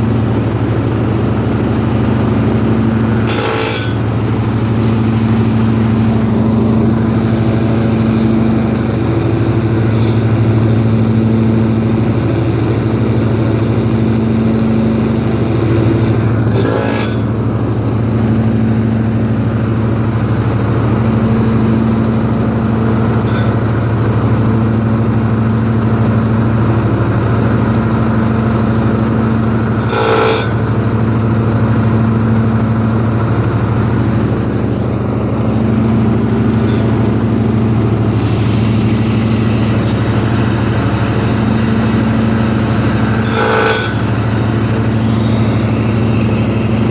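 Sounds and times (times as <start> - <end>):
metal grinding from mower deck: 0.0 - 46.9
mower engine running: 0.0 - 46.9
sharp metal clanks: 3.2 - 4.9.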